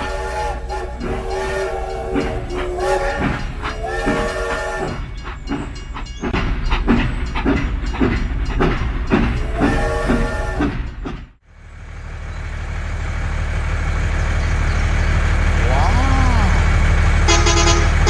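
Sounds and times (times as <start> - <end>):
steam train whistle: 0.0 - 5.4, 9.2 - 10.9, 17.2 - 18.0
steam train chugging: 0.0 - 18.0.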